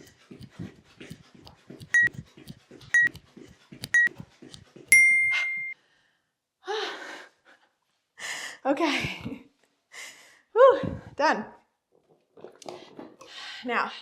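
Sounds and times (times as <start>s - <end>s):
interval timer beeps: 3.0s - 3.2s, 4.9s - 5.8s.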